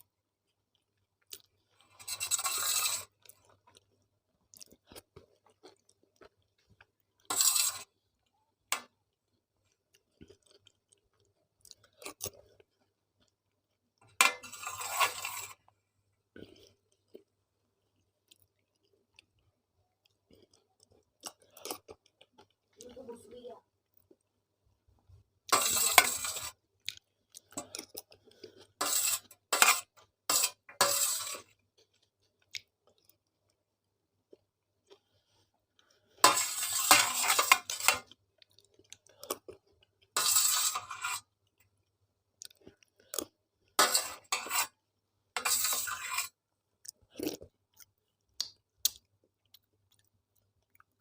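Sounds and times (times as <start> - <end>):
person chewing food: 0.0 - 2.4, 3.0 - 22.9, 23.8 - 36.8, 37.6 - 40.2, 40.9 - 51.0
clinks and scrapes of plate: 1.8 - 3.4, 7.2 - 8.0, 14.0 - 15.7, 25.5 - 26.6, 27.5 - 31.5, 35.8 - 38.1, 40.1 - 41.3, 43.2 - 44.8, 45.4 - 46.4.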